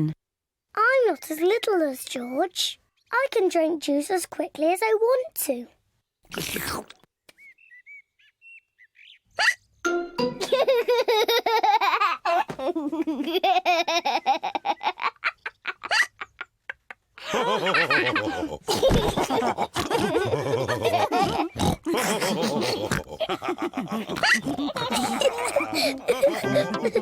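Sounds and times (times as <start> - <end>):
cartoon pigs laughing: 10.4 - 27.0.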